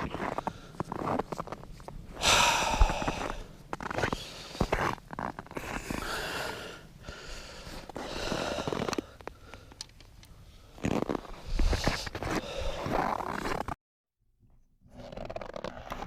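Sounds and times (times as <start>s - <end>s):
person breathing hard: 2.2s - 4.7s, 5.6s - 13.2s.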